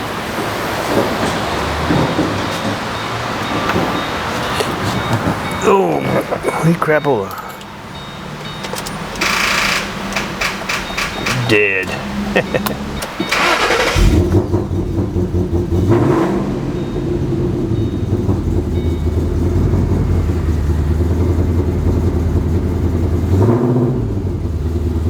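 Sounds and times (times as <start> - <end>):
car engine starting and idling: 0.0 - 25.0
car engine revving: 0.6 - 25.0.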